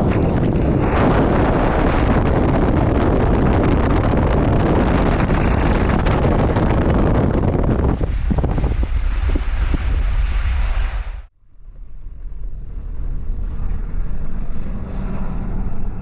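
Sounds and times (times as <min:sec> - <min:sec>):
storm wind buffeting microphone: 0:00.0 - 0:16.0.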